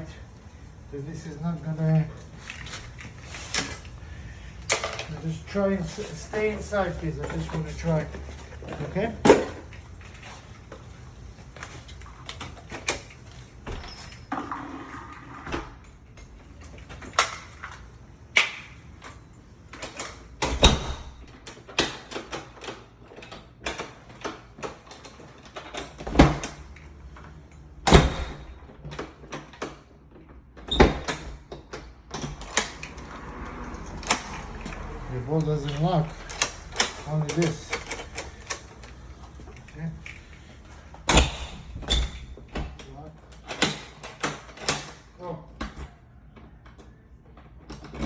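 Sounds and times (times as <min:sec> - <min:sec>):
latch and bolt clicks: 0:30.7 - 0:34.9.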